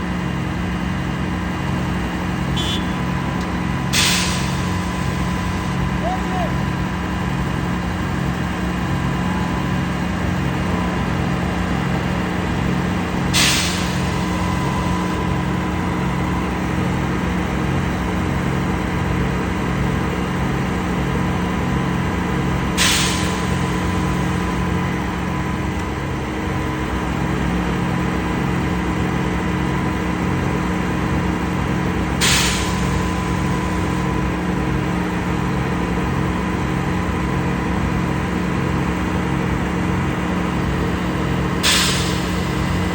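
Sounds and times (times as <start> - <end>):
concrete pump engine droning: 0.0 - 42.9
short sharp hisses: 3.9 - 4.6, 13.4 - 14.0, 22.8 - 23.5, 41.6 - 42.4.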